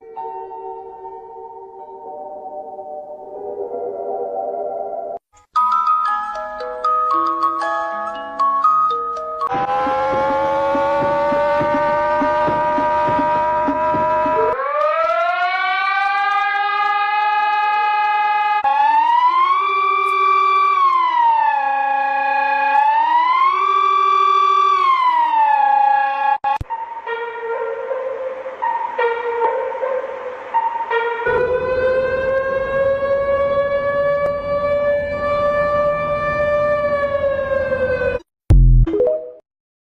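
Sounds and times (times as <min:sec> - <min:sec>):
person imitating a wailing siren: 0:09.5 - 0:26.4.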